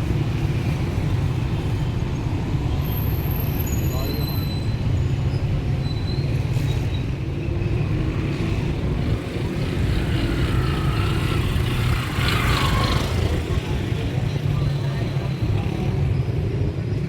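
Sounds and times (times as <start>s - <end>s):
cars and motorcycles passing: 6.3s - 17.0s.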